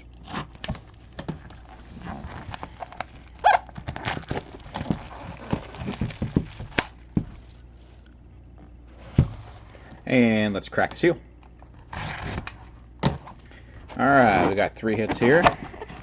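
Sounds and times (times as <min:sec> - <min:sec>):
plastic wrap crinkling: 0:00.2 - 0:08.1.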